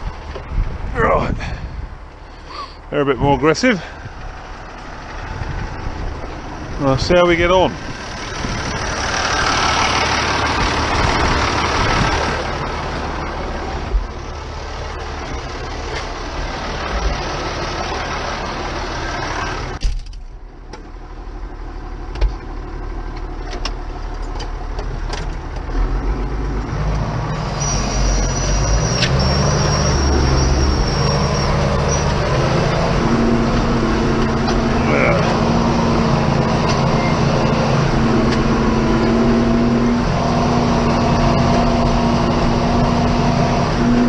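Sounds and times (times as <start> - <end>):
tractor diesel engine under load: 0.0 - 44.0.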